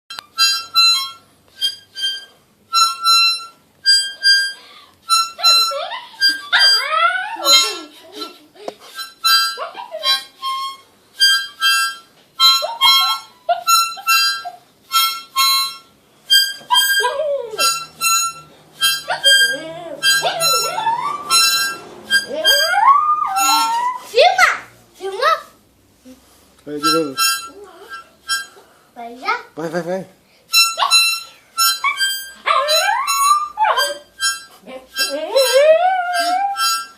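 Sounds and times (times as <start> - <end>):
reed wind instrument notes: 0.2 - 24.3, 26.7 - 28.6, 30.5 - 36.9
dog howling: 6.5 - 7.6, 19.1 - 24.1, 31.9 - 34.1, 35.2 - 36.9.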